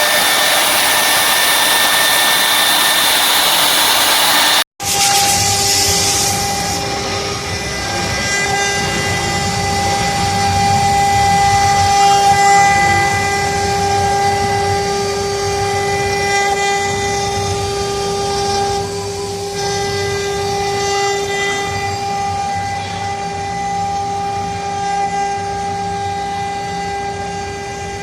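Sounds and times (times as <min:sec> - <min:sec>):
airy hiss: 0:00.0 - 0:07.3
router spindles high whine: 0:00.0 - 0:28.0.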